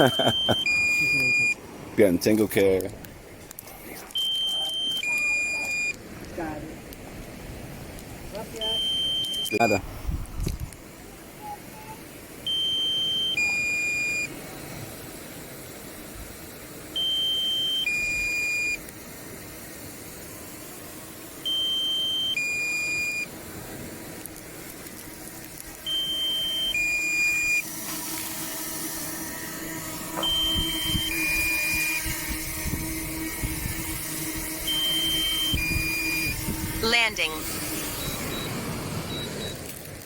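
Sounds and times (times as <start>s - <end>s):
two-tone warning beep: 0.0s - 1.6s, 4.1s - 6.0s, 8.6s - 9.8s, 11.8s - 14.3s, 17.0s - 18.8s, 21.4s - 23.3s, 25.9s - 27.7s, 29.2s - 39.6s
steady hiss: 0.0s - 40.0s.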